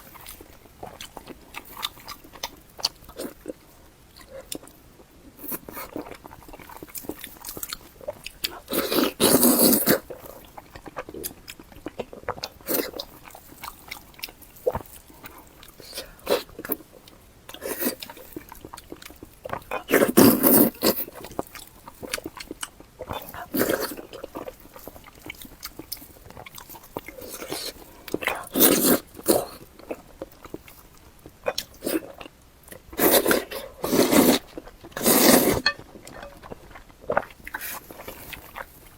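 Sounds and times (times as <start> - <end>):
clicky chewing: 0.0 - 33.7
loud bites of food: 8.4 - 16.8, 17.5 - 30.6.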